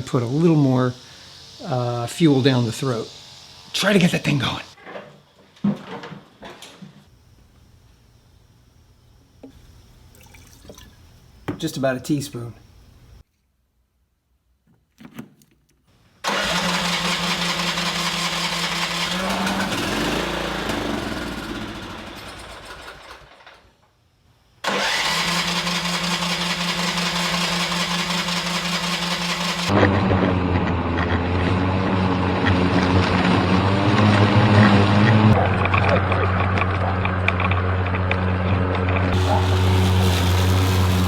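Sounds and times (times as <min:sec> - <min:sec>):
riding mower engine running: 0:16.2 - 0:23.6, 0:24.6 - 0:41.0.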